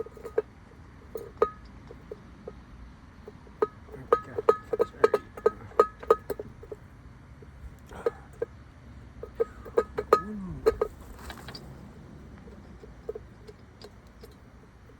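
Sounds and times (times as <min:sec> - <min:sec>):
metal hardware clinking: 0:03.6 - 0:06.8, 0:09.2 - 0:14.9.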